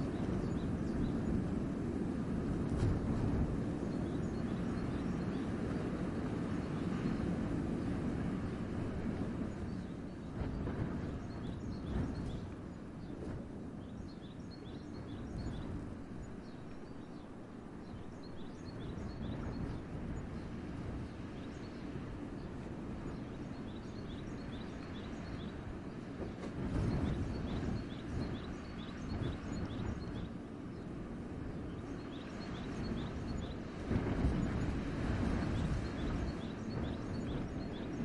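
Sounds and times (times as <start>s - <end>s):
wind gusting through forest: 0.0s - 38.0s
small birds chirping: 21.1s - 26.1s, 26.9s - 33.8s.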